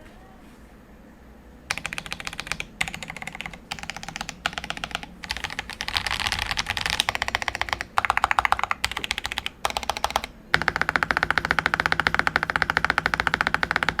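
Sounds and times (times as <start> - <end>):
fast typing on mechanical keyboard: 1.7 - 14.0.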